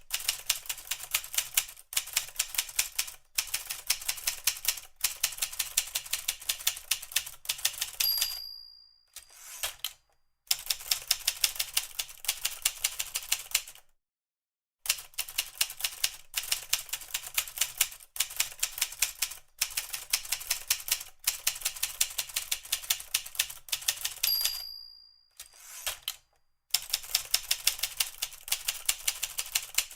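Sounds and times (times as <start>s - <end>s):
typewriter margin bell: 7.6s - 9.9s, 23.7s - 26.2s
typewriter carriage sliding: 9.2s - 10.0s, 25.4s - 26.2s.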